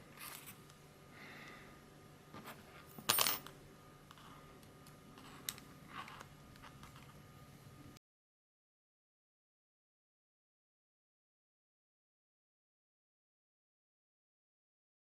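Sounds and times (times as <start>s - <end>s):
small parts and tools clicking: 2.5s - 7.2s.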